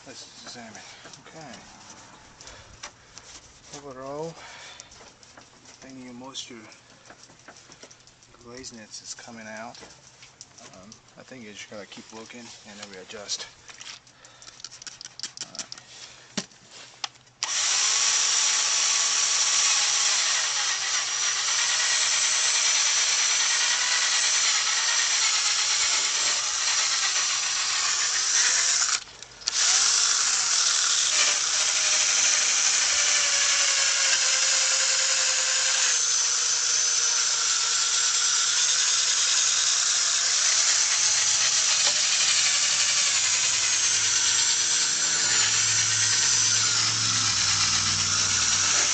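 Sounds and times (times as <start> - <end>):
power drill sanding plastic: 17.4 - 48.9.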